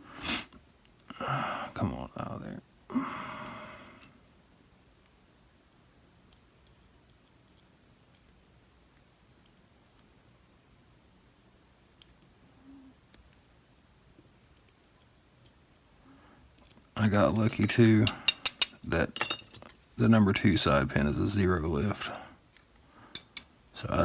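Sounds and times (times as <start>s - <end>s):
faint metal clicks: 16.6s - 19.8s.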